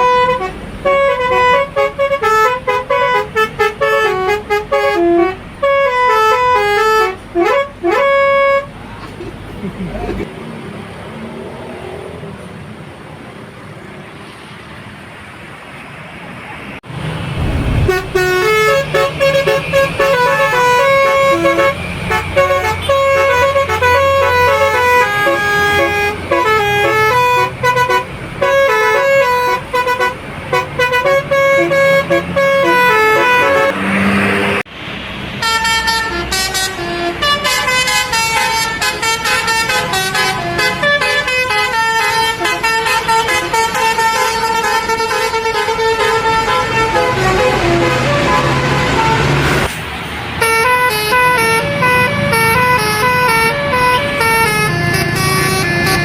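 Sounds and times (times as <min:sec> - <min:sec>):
bus engine running: 0:06.4 - 0:10.3.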